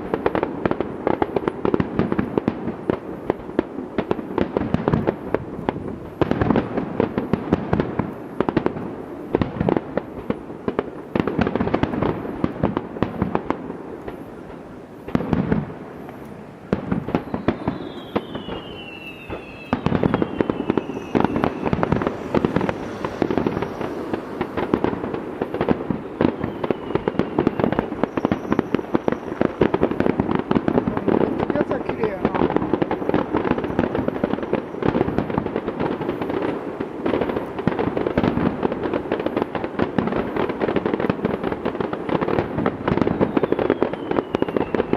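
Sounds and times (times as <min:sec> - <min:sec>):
fireworks bangs and crackling: 0:00.0 - 0:44.9
firework whistles descending: 0:11.4 - 0:44.9.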